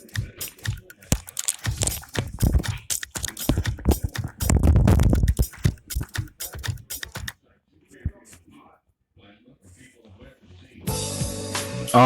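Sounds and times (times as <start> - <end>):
music with percussive clicks: 0.0 - 7.4.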